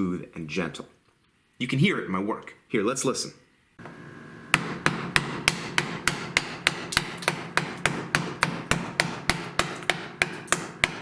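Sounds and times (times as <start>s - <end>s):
mallet striking wood chisel: 4.5s - 11.0s.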